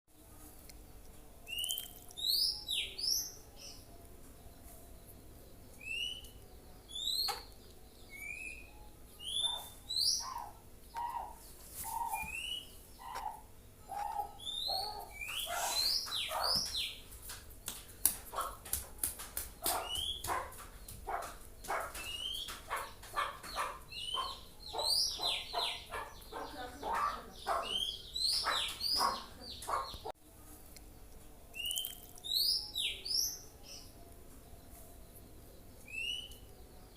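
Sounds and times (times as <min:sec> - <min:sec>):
bird singing whistled notes: 0:01.5 - 0:03.9, 0:05.8 - 0:11.3, 0:11.9 - 0:13.4, 0:19.7 - 0:20.3, 0:22.0 - 0:22.6, 0:31.6 - 0:33.9, 0:35.8 - 0:36.5.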